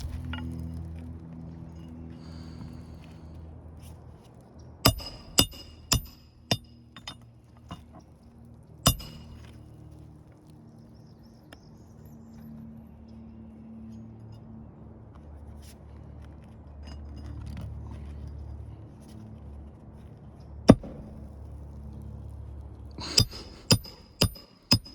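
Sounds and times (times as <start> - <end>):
hammer striking with metallic ring: 4.9 - 7.8, 8.9 - 9.5, 20.7 - 21.1, 23.0 - 24.9.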